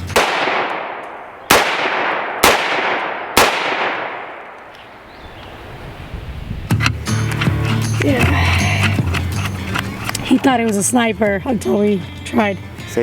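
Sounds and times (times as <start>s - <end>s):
rifle shots with echo: 0.0s - 4.8s.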